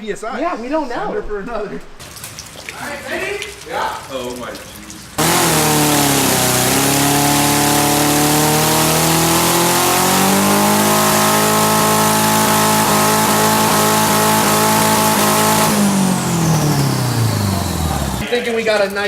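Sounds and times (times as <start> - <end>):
turbocharged engine accelerating: 5.2 - 18.2.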